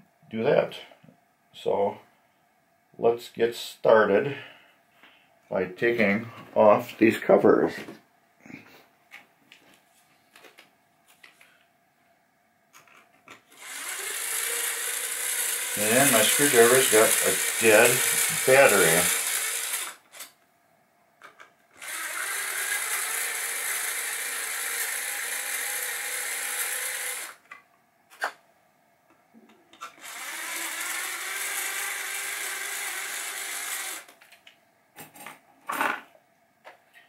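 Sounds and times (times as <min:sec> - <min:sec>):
electric screwdriver running: 0:13.5 - 0:20.3, 0:21.8 - 0:27.4, 0:30.0 - 0:34.2.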